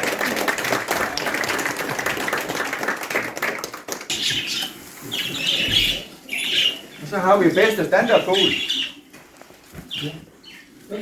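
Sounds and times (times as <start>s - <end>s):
audience applauding: 0.0s - 4.2s
budgerigars chirping: 4.1s - 9.1s, 9.8s - 10.8s.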